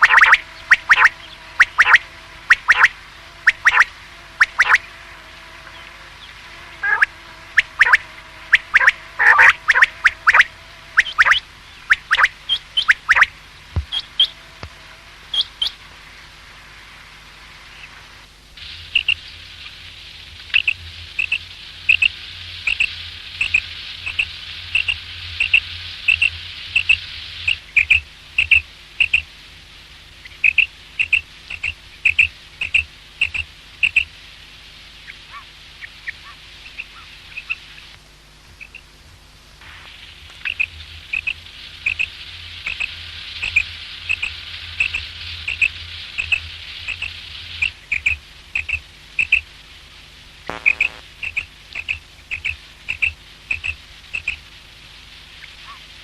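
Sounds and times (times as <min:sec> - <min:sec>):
quail calling: 0:00.0 - 0:04.9, 0:06.8 - 0:13.3, 0:35.1 - 0:37.6, 0:40.4 - 0:42.1, 0:55.4 - 0:55.8
steady hiss and low hum: 0:00.0 - 0:56.0.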